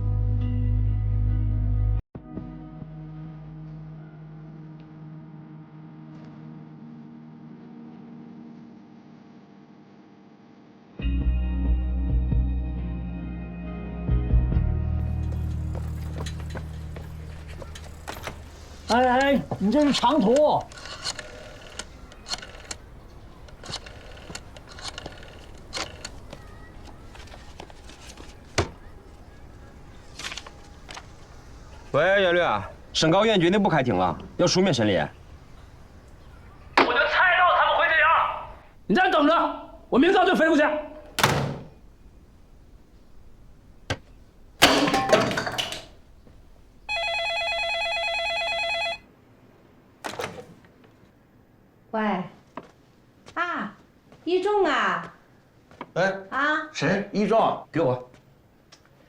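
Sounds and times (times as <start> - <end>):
telephone ringing: 15.3 - 28.0, 44.6 - 49.1.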